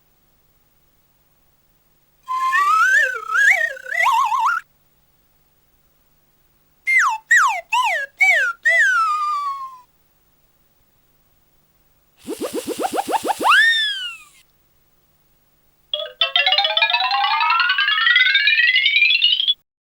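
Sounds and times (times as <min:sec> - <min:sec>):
downward-sliding whistle notes: 0:02.3 - 0:04.6, 0:12.2 - 0:14.4
wobbling comedy whistle: 0:02.3 - 0:04.6, 0:06.9 - 0:09.8, 0:12.2 - 0:14.4.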